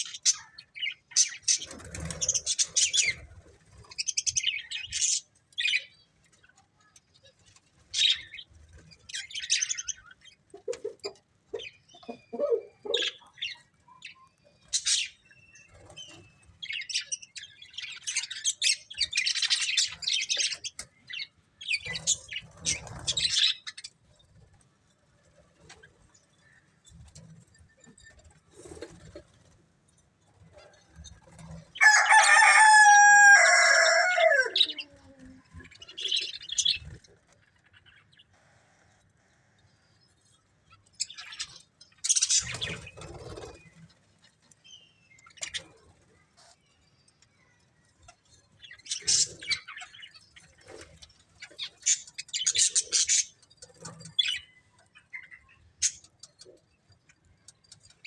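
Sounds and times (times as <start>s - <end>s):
rooster crowing: 31.8s - 34.8s.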